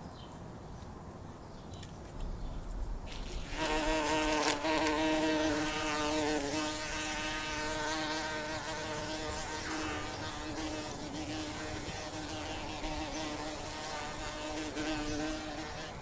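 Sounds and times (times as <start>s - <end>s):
bee buzzing: 3.1s - 16.0s.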